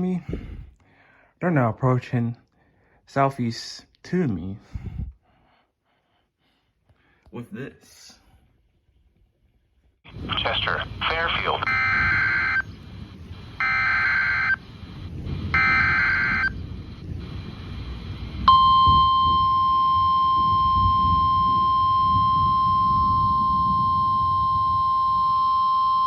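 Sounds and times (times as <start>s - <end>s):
low radio hiss: 10.1s - 20.2s
buzzy data bursts: 10.2s - 18.8s
steady alarm tone: 10.2s - 26.0s.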